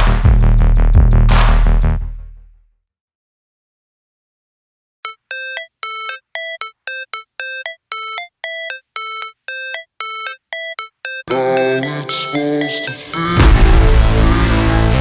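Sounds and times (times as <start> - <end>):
synthesizer riff of bell-like notes: 5.1 - 14.2.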